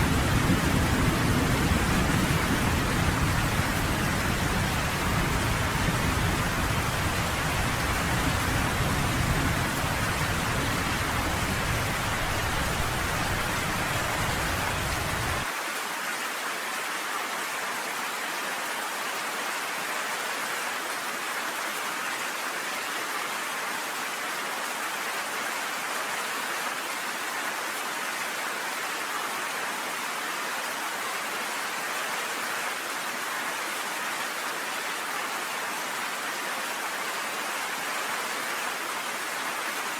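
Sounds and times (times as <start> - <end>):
rain hissing: 0.0 - 15.5.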